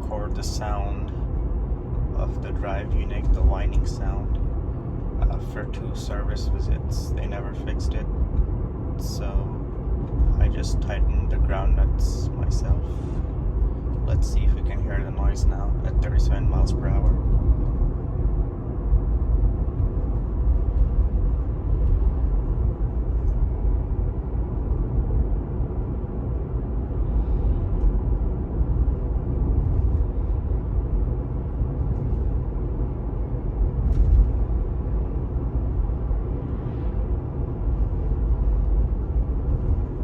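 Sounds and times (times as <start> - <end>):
road and tyre rumble: 0.0 - 40.0.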